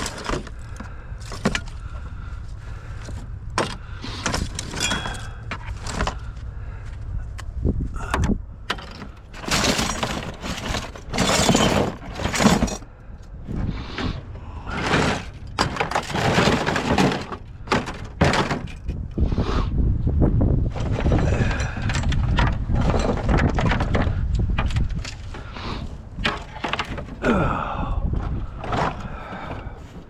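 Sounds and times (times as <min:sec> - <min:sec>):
low steady rumble: 0:00.0 - 0:30.0
scrap metal crashing and clattering: 0:08.7 - 0:12.9, 0:14.7 - 0:18.9.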